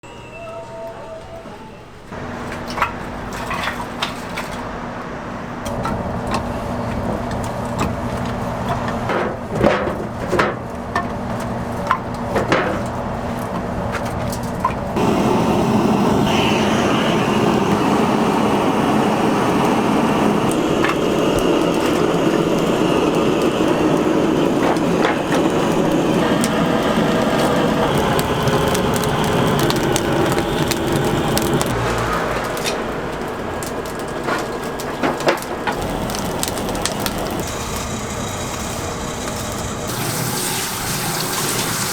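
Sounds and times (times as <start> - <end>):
wood fire crackling and popping: 2.2 - 4.7, 5.6 - 41.6
loud steady hiss: 15.0 - 31.8, 35.5 - 41.9.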